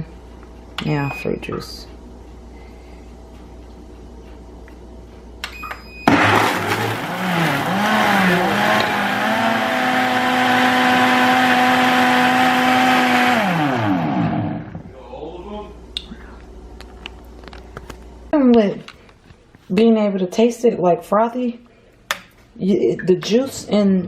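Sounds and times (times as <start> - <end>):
blender motor whining: 6.1 - 14.8.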